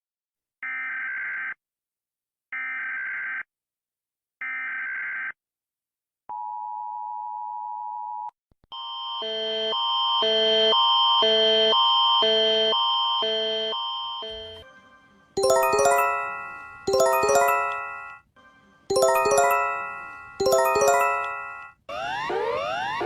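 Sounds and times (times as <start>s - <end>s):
steady alert tone: 15.4s - 18.0s, 18.9s - 21.6s
alarm alternating tones: 15.4s - 18.2s, 18.9s - 23.0s.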